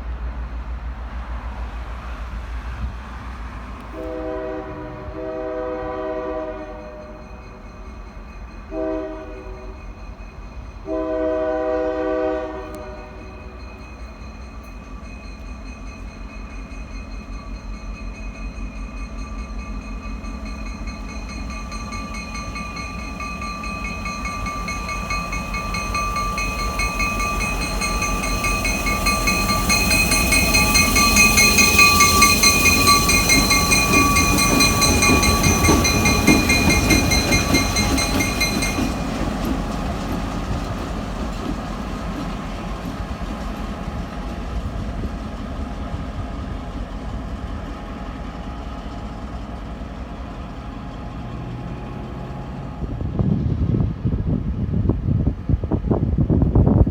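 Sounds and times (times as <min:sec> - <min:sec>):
freight train rumbling past: 0:00.0 - 0:56.9
high-pitched ringing tone: 0:13.2 - 0:39.0.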